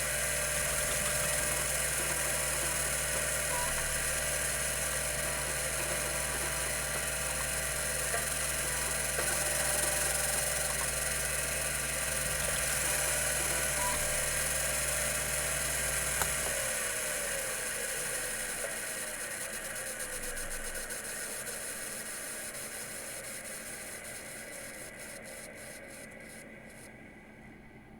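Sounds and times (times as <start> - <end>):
hard drive click: 0.0 - 16.7
hard drive whine and hum: 0.0 - 27.9.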